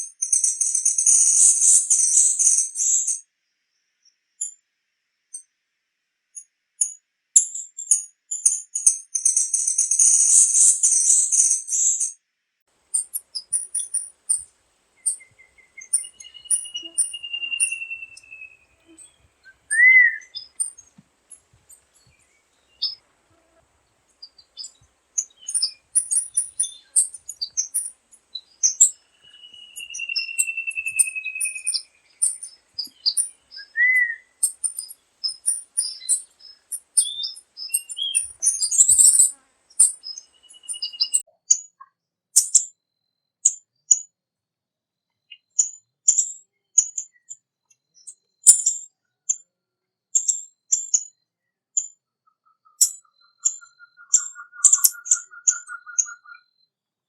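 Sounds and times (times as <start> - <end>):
high bird chip notes: 13.0 - 23.2, 23.9 - 41.2
dense high bird trill: 13.0 - 41.2, 52.6 - 56.4.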